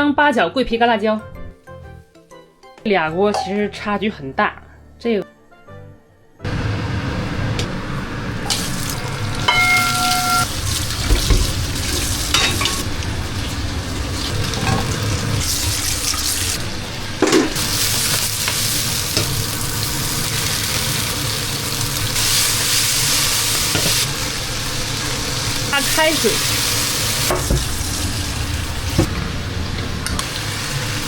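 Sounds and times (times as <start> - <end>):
meat sizzling in a pot: 8.3 - 29.1, 30.0 - 31.0.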